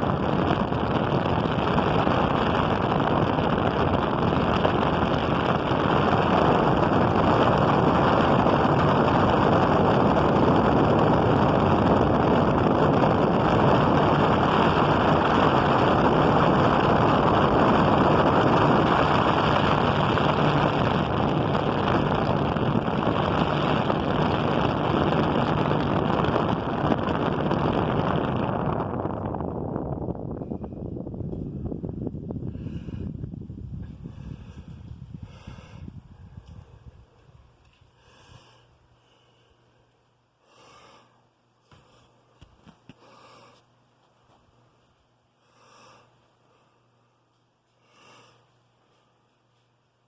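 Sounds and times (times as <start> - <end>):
wind buffeting microphone: 0.0 - 38.5
fan air rushing: 0.0 - 50.0.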